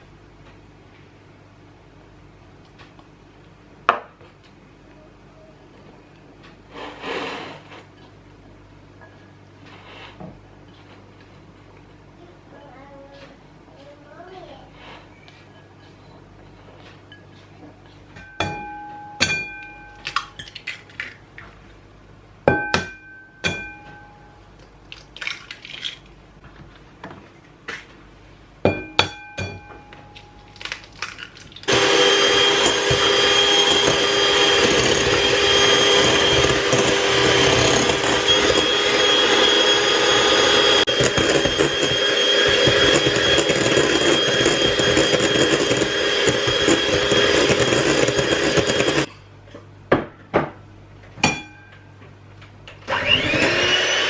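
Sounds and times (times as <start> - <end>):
utensils clinking on mixing bowl: 16.8 - 21.2, 28.7 - 49.1
electric mixer running: 31.7 - 49.1, 52.9 - 54.0.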